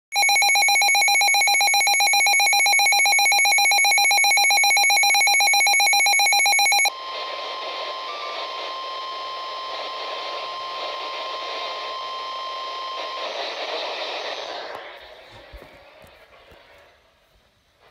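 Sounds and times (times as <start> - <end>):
electronic alarm beeps: 0.1 - 14.6
radio static: 6.8 - 17.9.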